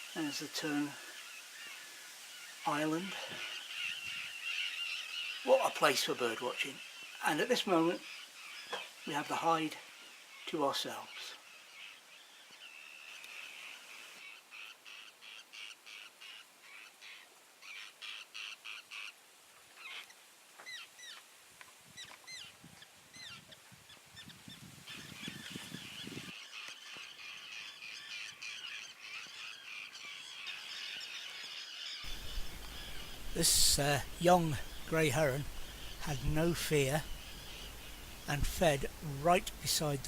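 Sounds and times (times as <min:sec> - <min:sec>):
terns calling: 0:00.0 - 0:21.3, 0:22.0 - 0:40.0.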